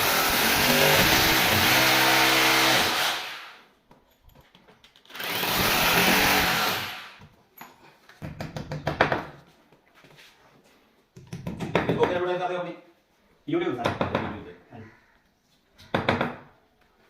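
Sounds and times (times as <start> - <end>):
power tool motor running: 0.0 - 3.5, 5.1 - 7.2
knocks and taps: 8.2 - 9.4, 11.2 - 12.2.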